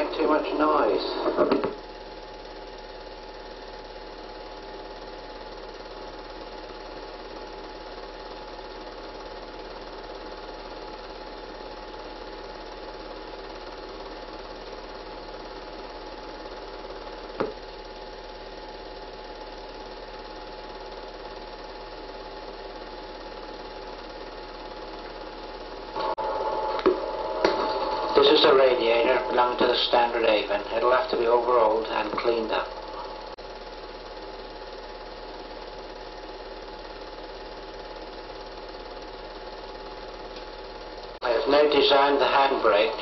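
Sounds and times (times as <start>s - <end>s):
film projector whirring: 0.0s - 43.0s
low mains hum: 0.0s - 43.0s
projector click: 26.0s - 30.7s.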